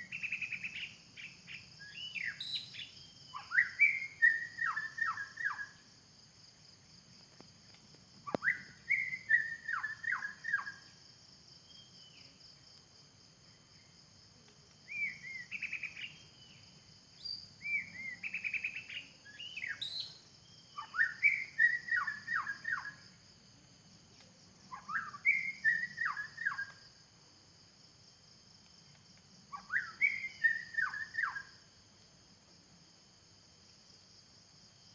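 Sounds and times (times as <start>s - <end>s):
bird whistling song: 0.0s - 5.8s, 8.3s - 10.9s, 14.8s - 16.6s, 17.2s - 23.0s, 24.7s - 26.8s, 29.5s - 31.5s
high insect drone: 0.0s - 34.9s.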